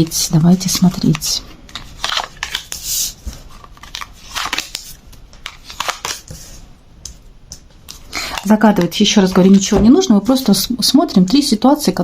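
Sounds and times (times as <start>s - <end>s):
cards shuffling: 0.6s - 6.6s.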